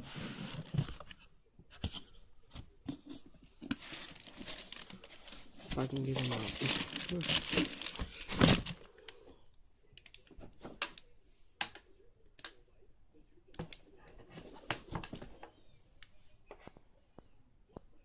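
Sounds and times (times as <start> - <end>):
packaging crinkling: 3.8 - 8.8.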